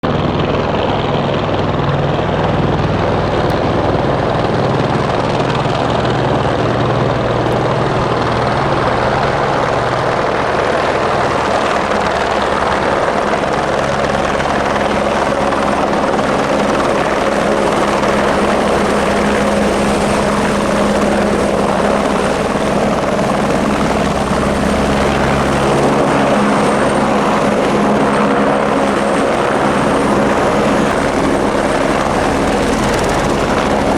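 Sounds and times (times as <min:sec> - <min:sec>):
helicopter rotor and turbine: 0:00.0 - 0:33.9.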